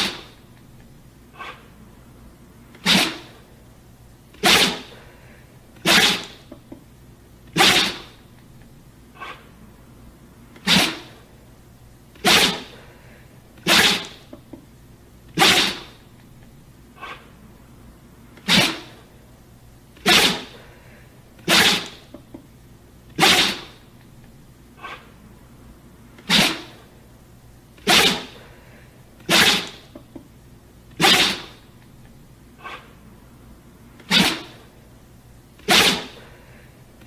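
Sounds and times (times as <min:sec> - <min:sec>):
dog sneezing: 0:00.0 - 0:00.4, 0:01.3 - 0:01.7, 0:02.8 - 0:03.4, 0:04.3 - 0:06.5, 0:07.5 - 0:08.2, 0:09.2 - 0:09.5, 0:10.6 - 0:11.2, 0:12.2 - 0:12.8, 0:13.6 - 0:14.4, 0:15.4 - 0:16.0, 0:17.0 - 0:17.3, 0:18.4 - 0:19.0, 0:20.0 - 0:22.2, 0:23.2 - 0:23.8, 0:24.8 - 0:25.1, 0:26.2 - 0:26.9, 0:27.8 - 0:30.0, 0:31.0 - 0:31.6, 0:32.6 - 0:32.9, 0:34.0 - 0:34.7, 0:35.6 - 0:36.6.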